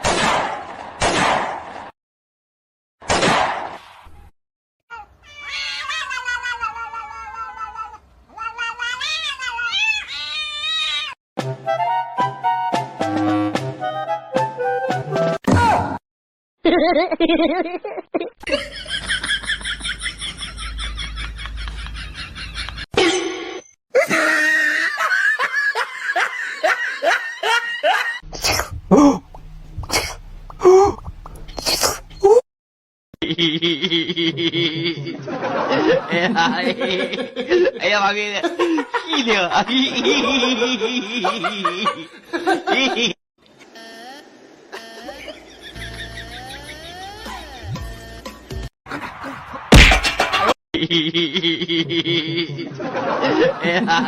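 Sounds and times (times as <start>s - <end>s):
cat yowling: 5.2s - 11.2s
hearty laughter: 16.7s - 22.9s, 24.0s - 28.2s, 33.2s - 37.8s, 38.4s - 43.2s, 44.7s - 47.7s, 48.9s - 54.0s
low steady hum: 28.4s - 32.2s.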